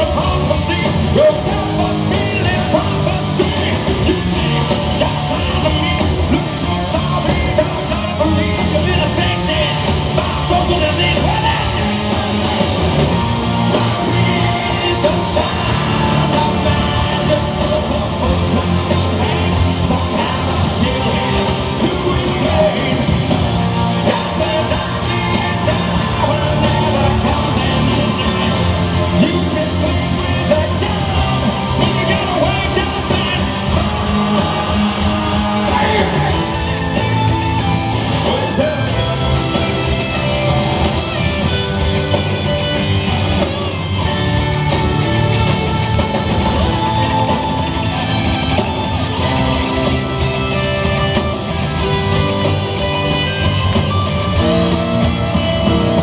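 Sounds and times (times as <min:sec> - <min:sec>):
person yelling and singing: 0:00.0 - 0:12.8, 0:13.6 - 0:39.4
bass guitar: 0:00.0 - 0:56.0
distorted electric guitars: 0:00.0 - 0:56.0
drums: 0:00.0 - 0:56.0.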